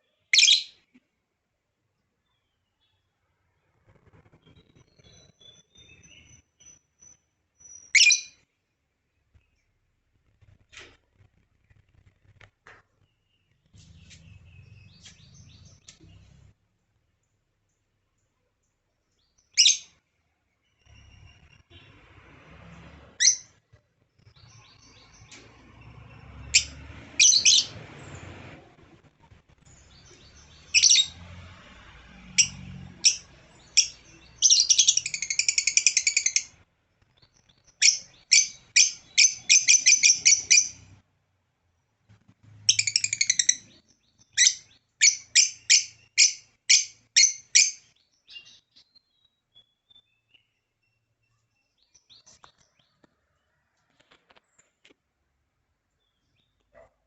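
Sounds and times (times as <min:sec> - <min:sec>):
lovebird chirping and trilling: 0:00.3 - 0:00.9, 0:03.9 - 0:08.4, 0:19.4 - 0:20.0, 0:23.2 - 0:23.6, 0:26.4 - 0:27.9, 0:29.7 - 0:31.2, 0:32.4 - 0:41.0, 0:42.7 - 0:50.5.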